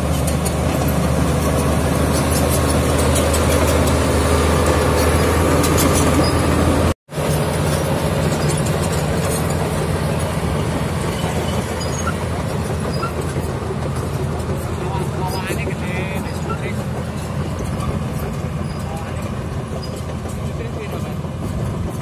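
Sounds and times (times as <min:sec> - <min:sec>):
bulldozer diesel engine running: 0:00.0 - 0:22.0
steel tracks squeaking and clicking: 0:00.0 - 0:22.0.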